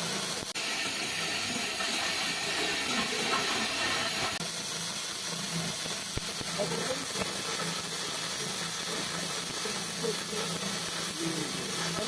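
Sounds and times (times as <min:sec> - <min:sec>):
welding arc crackling and hissing: 0:00.0 - 0:12.0.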